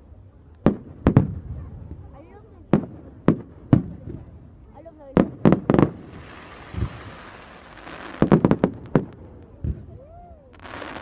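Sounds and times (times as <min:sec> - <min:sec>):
sharp firework bangs: 0:05.2 - 0:09.9
fireworks hissing: 0:05.5 - 0:09.3, 0:10.5 - 0:11.0.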